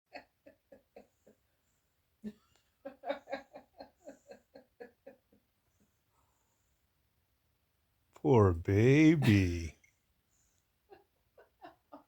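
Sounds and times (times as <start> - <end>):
person laughing in rhythmic pulses: 8.3 - 9.7.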